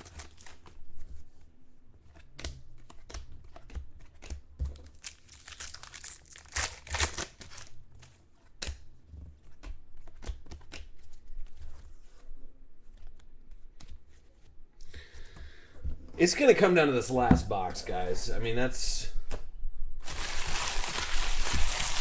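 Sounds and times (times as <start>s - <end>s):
wrappers crinkling: 4.9s - 7.7s, 20.0s - 22.0s.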